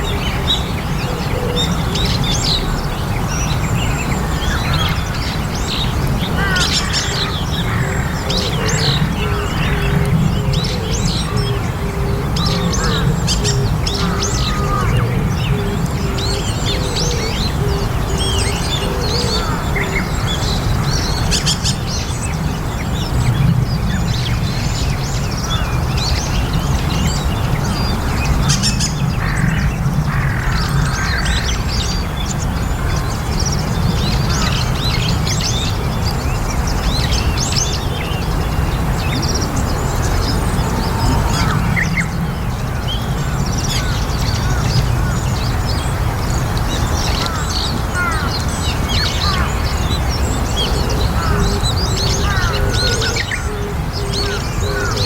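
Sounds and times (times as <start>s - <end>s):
starlings chirping and chattering: 0.0s - 55.0s
steady low rumble: 33.3s - 47.7s.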